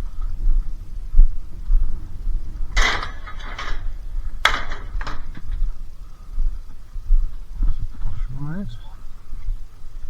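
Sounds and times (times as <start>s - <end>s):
wind buffeting microphone: 0.0s - 10.0s
rustling or clattering: 2.7s - 5.8s.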